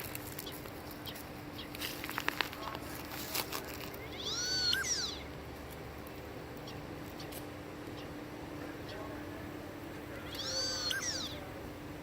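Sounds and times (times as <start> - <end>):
duck whistle-like call: 4.2 - 5.2.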